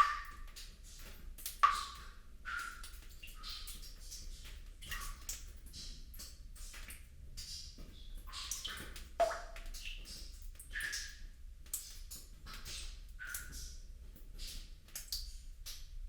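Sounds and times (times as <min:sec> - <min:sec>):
water drops plopping: 0:00.0 - 0:00.4, 0:01.6 - 0:03.6, 0:08.3 - 0:10.1.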